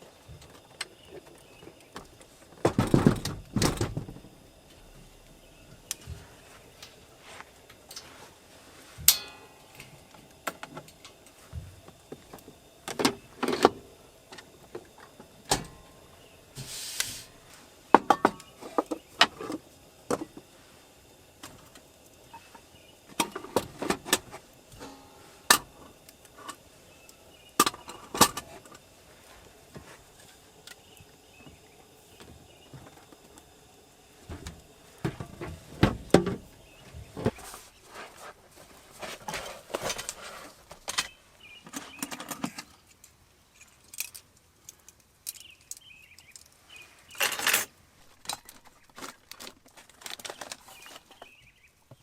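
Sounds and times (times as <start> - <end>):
short hiss: 16.5 - 17.8.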